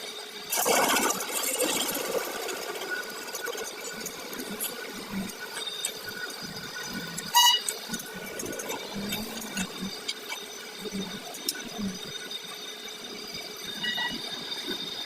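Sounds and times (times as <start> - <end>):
small machine rattling: 0.0 - 15.0
sharp metallic squeal: 7.0 - 8.0, 13.6 - 14.5.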